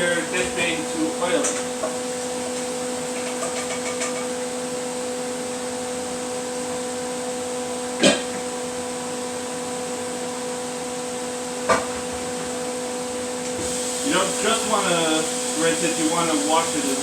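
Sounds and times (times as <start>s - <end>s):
steady hum: 0.0s - 17.0s
even hiss: 13.6s - 17.0s.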